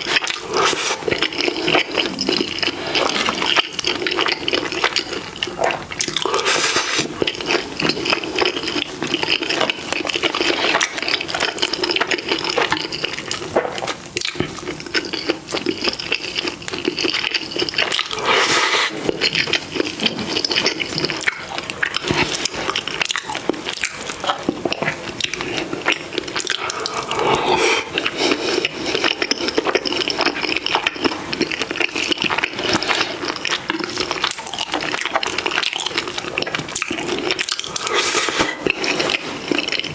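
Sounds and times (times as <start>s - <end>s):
wet chewing and smacking: 0.0s - 39.9s.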